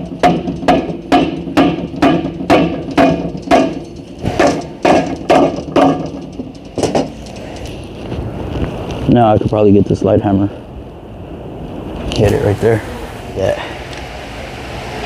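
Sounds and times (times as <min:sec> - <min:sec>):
hammer striking metal: 0:00.0 - 0:07.4.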